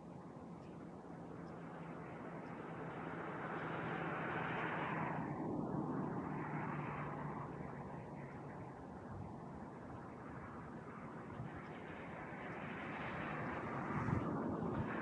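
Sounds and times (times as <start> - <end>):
vehicle passing by: 12.6 - 15.0.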